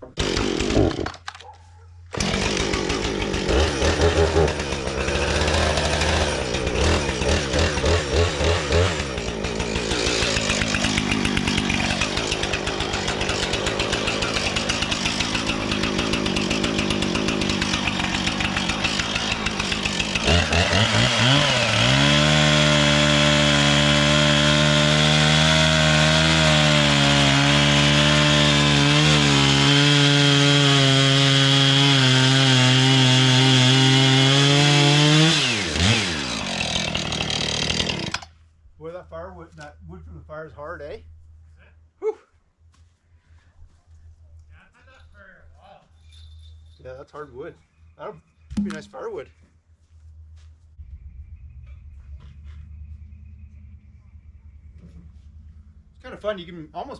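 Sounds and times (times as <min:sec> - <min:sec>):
band blade cutting wood: 0:00.0 - 0:38.4
bandsaw mill engine running: 0:00.1 - 0:01.3, 0:02.1 - 0:38.3.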